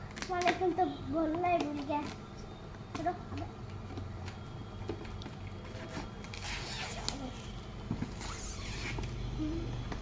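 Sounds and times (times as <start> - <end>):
packaging ripping: 5.7 - 7.3.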